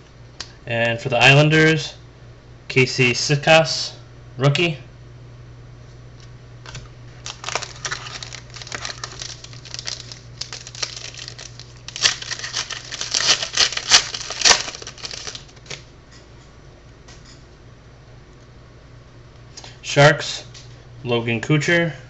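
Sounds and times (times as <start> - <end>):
card packaging crinkling: 6.7 - 15.8.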